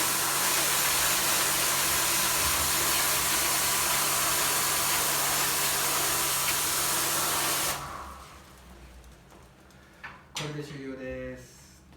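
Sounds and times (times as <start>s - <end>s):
pressure washer spraying water: 0.0s - 7.9s
pump motor hum: 0.0s - 8.6s.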